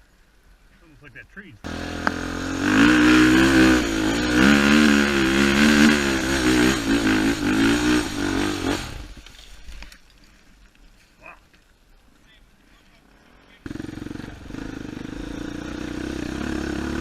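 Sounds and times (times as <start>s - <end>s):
off-road vehicle engine revving: 1.6s - 9.2s, 13.6s - 17.0s.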